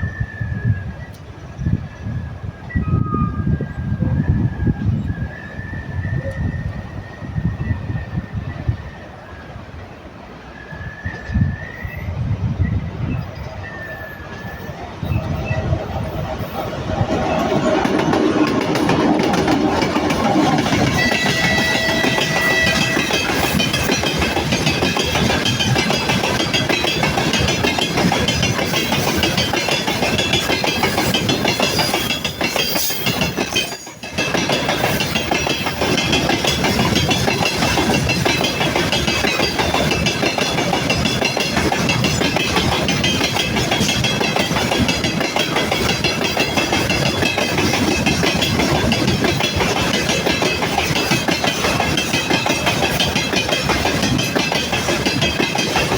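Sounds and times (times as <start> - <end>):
train wheels clattering over rail joints: 13.7 - 55.9.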